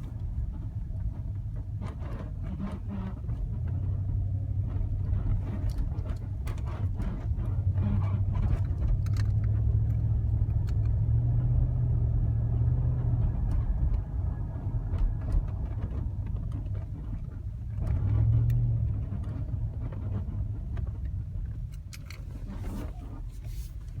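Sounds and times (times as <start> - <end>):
engine and road noise drone: 0.0 - 24.0
creaks and clicks: 5.0 - 11.2, 14.9 - 24.0.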